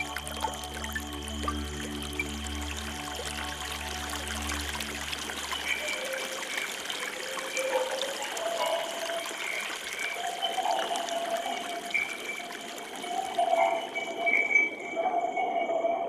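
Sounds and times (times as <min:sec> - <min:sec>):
low musical drone: 0:00.0 - 0:06.2
river water running: 0:00.0 - 0:15.0.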